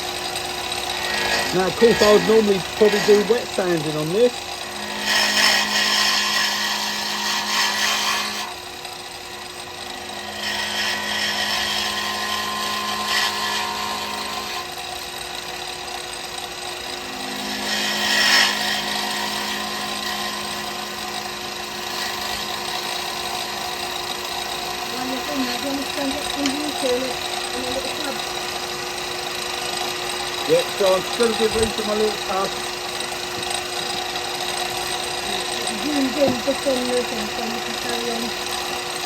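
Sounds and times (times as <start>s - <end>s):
wood lathe motor humming: 0.0s - 39.0s
abrasive hissing on spinning wood: 0.7s - 8.4s, 17.1s - 39.0s.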